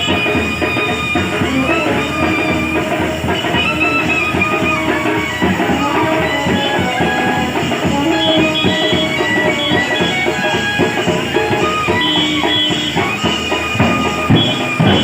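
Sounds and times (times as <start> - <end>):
steady drum beat: 0.0 - 15.0
sustained melodic instrument lines: 0.0 - 15.0.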